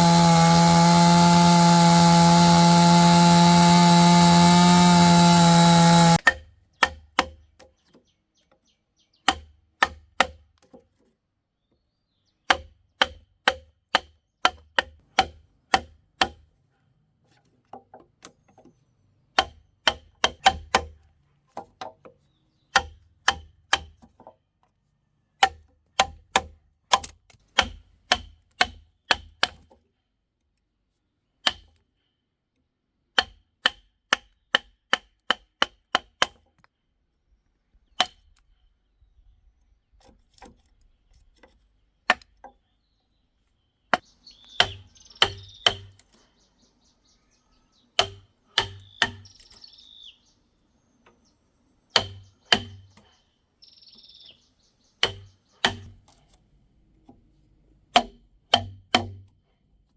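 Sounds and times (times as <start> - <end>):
hand tool striking wood: 0.0 - 7.4, 12.5 - 16.4, 25.4 - 29.7, 33.2 - 36.4, 44.0 - 46.0, 48.0 - 49.6, 52.0 - 53.1, 55.0 - 56.2, 57.9 - 59.4.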